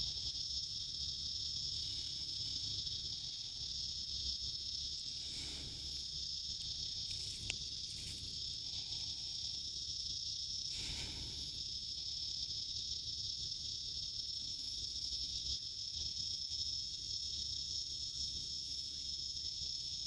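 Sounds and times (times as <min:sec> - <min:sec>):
high-pitched insect chorus: 0:00.0 - 0:20.0.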